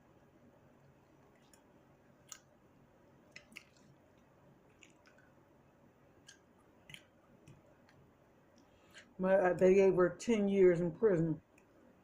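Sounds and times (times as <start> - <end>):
mouth chewing clicks and smacks: 3.3 - 5.4, 6.2 - 8.0.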